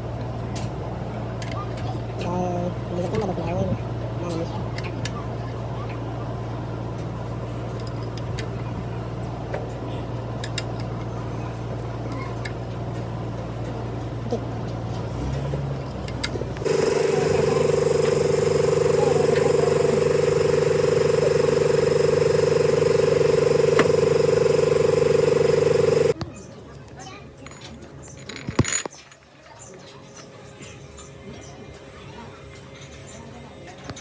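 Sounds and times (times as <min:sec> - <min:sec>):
machinery low hum: 0:16.4 - 0:26.2
loud high-pitched whine: 0:16.6 - 0:26.2.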